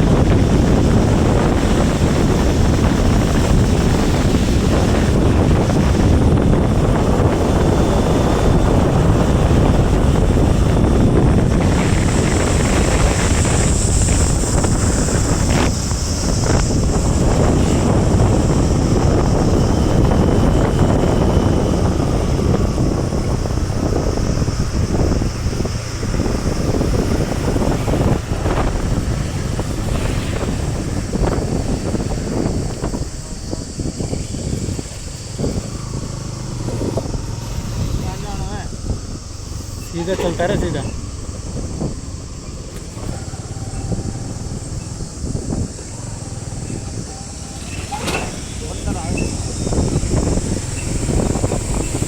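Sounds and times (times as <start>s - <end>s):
wind buffeting microphone: 0.0s - 52.0s
high shrill hissing tone: 7.4s - 52.0s.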